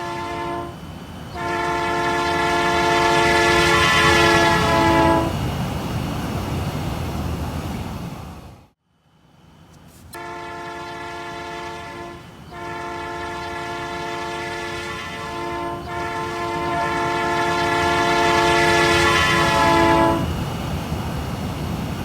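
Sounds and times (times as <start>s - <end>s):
train air horn blasts: 0.0s - 5.4s, 10.1s - 20.3s
low train rumble: 0.0s - 22.0s.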